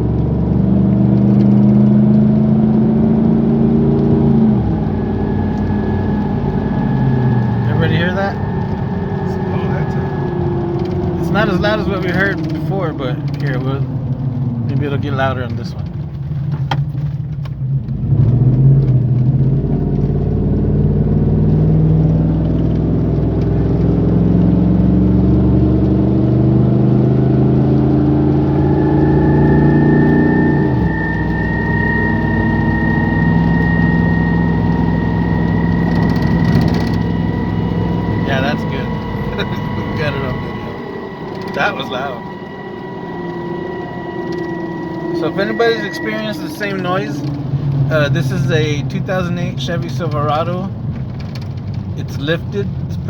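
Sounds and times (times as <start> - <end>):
low droning hum in truck cab: 0.0 - 53.0
thin high-pitched whine: 4.0 - 13.8, 26.8 - 50.7.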